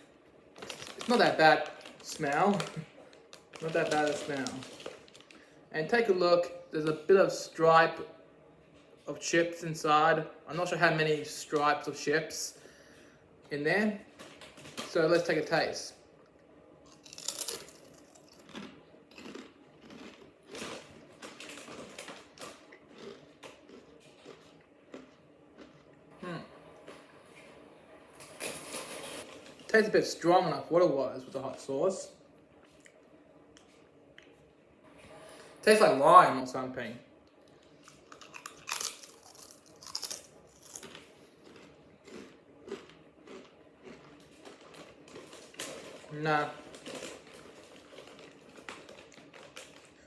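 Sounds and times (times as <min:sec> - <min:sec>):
potato chips crunching: 0:00.5 - 0:05.4, 0:16.9 - 0:25.9, 0:37.5 - 0:50.0.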